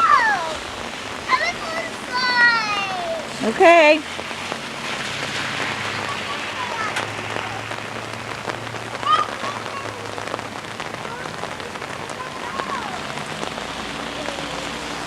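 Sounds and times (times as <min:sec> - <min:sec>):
rain pattering: 0:00.0 - 0:15.0.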